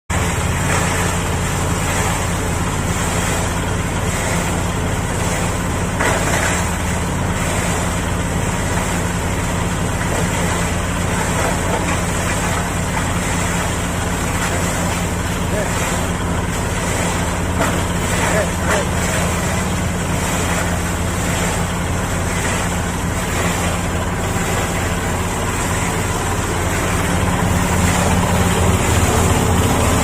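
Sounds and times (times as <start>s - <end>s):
motor hum: 0.1s - 30.0s.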